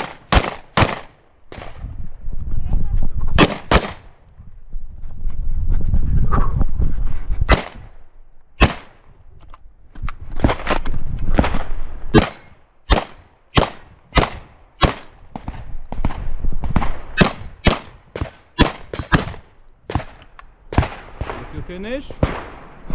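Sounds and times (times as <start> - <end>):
shotgun shots: 0.0 - 1.8, 3.4 - 4.2, 7.5 - 7.9, 8.6 - 9.1, 12.2 - 15.5, 17.2 - 20.2.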